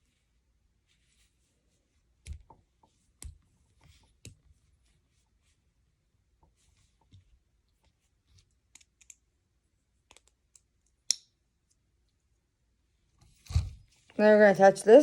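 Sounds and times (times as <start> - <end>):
plastic lego pieces clicking: 8.7 - 9.2.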